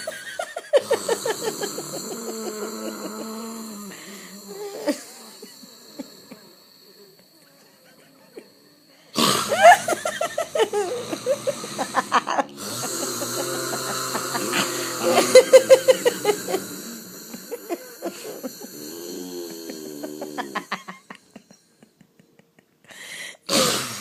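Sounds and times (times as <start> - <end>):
person snoring loudly: 0.0 - 7.1, 8.5 - 21.7, 23.3 - 24.0.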